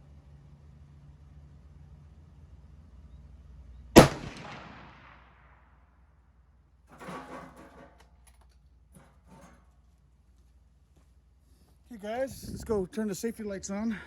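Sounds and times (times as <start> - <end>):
rifle shot with echo: 4.0 - 5.6.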